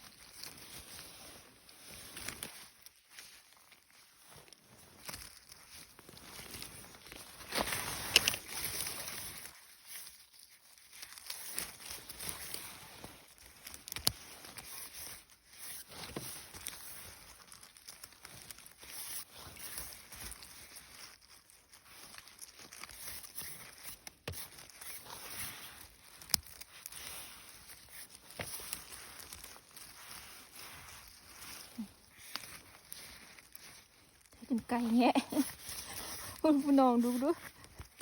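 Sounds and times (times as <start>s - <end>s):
footsteps on forest floor: 4.2s - 9.2s, 26.3s - 38.0s.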